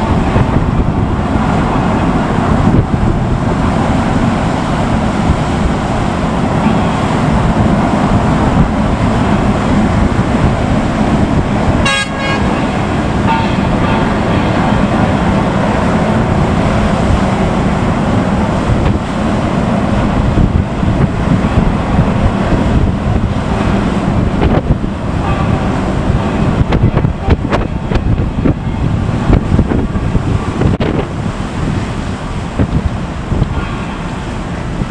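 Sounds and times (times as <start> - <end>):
low engine hum: 0.0 - 34.9
steady rushing noise: 0.0 - 34.9
short horn toot: 11.8 - 14.0.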